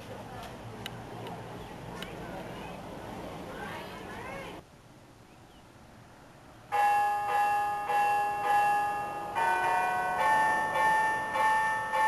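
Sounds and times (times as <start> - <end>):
carillon bells playing a tune: 6.7 - 12.0.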